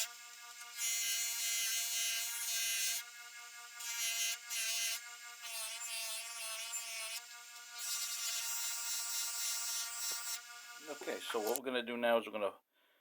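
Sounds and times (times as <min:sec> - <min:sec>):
polishing wheel motor running: 0:07.2 - 0:11.6.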